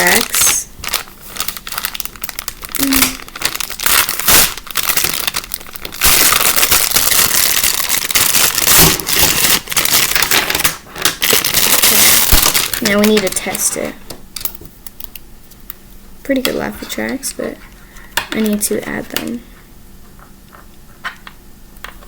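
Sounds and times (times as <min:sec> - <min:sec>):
plastic packaging crinkling: 0:00.0 - 0:13.8.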